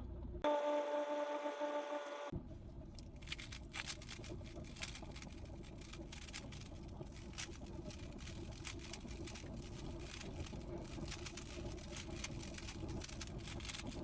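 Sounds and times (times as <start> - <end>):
low room hum: 0.0 - 14.0
plastic cube layers clicking: 3.2 - 14.0.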